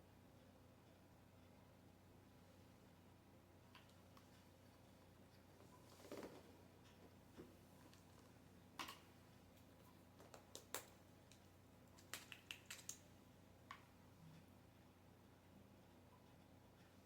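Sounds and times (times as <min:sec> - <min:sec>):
faint clicks and taps: 0:03.7 - 0:04.5, 0:05.3 - 0:14.5.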